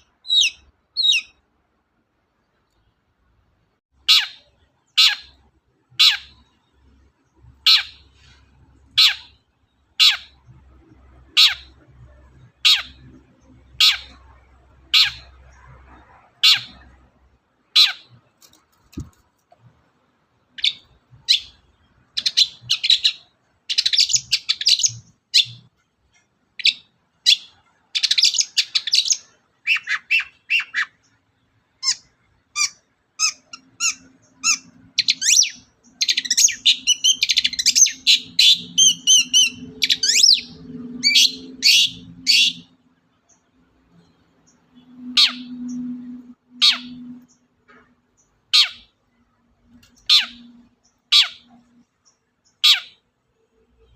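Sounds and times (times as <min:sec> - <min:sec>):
bird scratchy chattering song: 0:00.0 - 0:01.4, 0:04.0 - 0:06.6, 0:07.4 - 0:17.0, 0:20.5 - 0:25.7, 0:26.6 - 0:31.2, 0:31.8 - 0:42.8, 0:44.0 - 0:49.0, 0:49.7 - 0:53.0
bird harsh calls: 0:04.0 - 0:17.0, 0:17.7 - 0:19.7, 0:26.6 - 0:42.8, 0:43.9 - 0:49.0, 0:49.8 - 0:51.8, 0:52.5 - 0:53.0.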